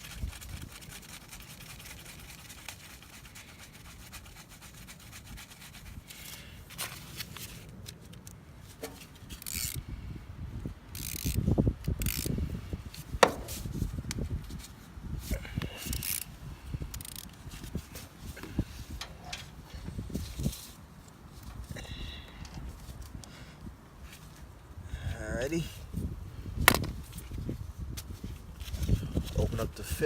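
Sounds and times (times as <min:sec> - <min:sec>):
hands and tools scraping: 0:00.0 - 0:09.8, 0:12.0 - 0:23.2.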